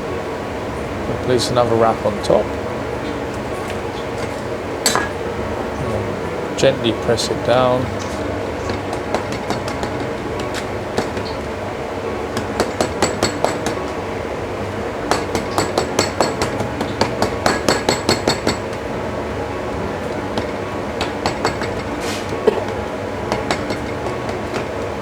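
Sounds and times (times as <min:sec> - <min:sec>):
steady background hum: 0:00.0 - 0:25.0
utensil tapping on hard surface: 0:08.6 - 0:11.4, 0:12.4 - 0:13.8, 0:15.1 - 0:18.8, 0:20.1 - 0:24.8.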